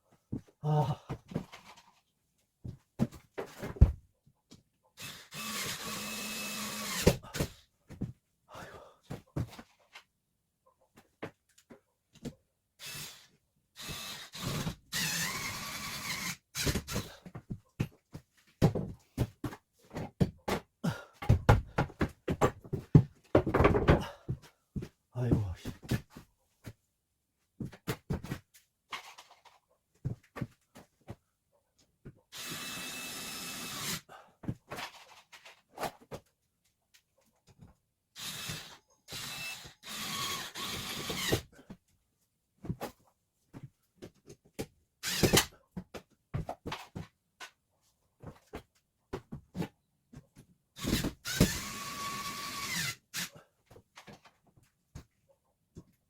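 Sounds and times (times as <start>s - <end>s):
power drill running: 5.0s - 7.2s, 12.8s - 17.1s, 32.3s - 34.0s, 38.2s - 41.4s, 45.0s - 45.5s, 50.8s - 53.3s.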